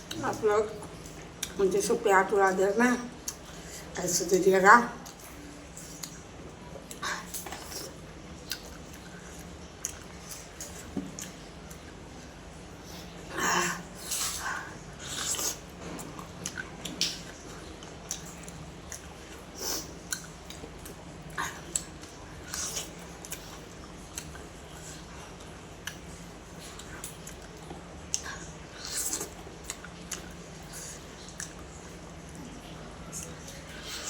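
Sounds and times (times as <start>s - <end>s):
wet chewing clicks: 0.0s - 1.6s, 5.0s - 11.9s, 15.0s - 32.0s.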